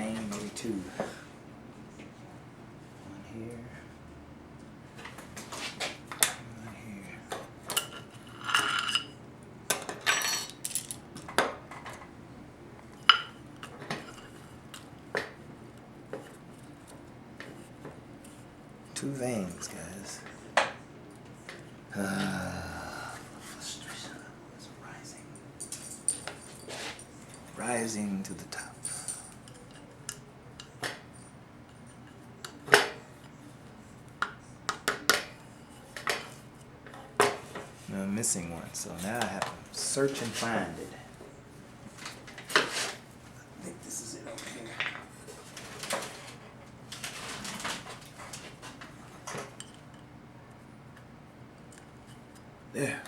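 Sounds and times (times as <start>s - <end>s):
metal parts clinking and tapping: 9.7s - 12.0s.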